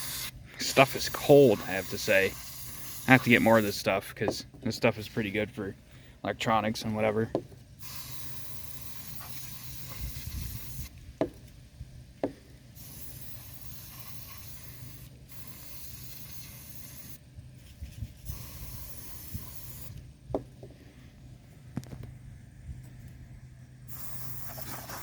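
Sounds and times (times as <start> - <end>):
compressed air can hissing: 0.0 - 3.8, 7.8 - 10.9, 12.8 - 17.2, 18.2 - 20.0, 23.9 - 25.0
steady low hum: 0.0 - 25.0.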